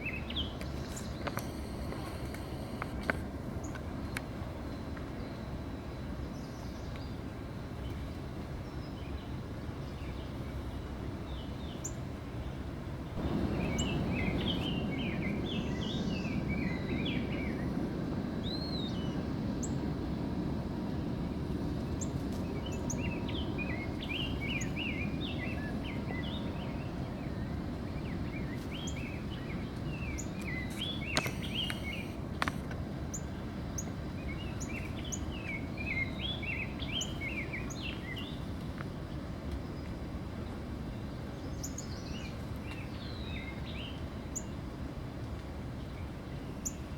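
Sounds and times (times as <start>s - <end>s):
low outdoor rumble: 0.0s - 46.9s
bird chirping: 13.2s - 17.6s, 27.9s - 32.2s.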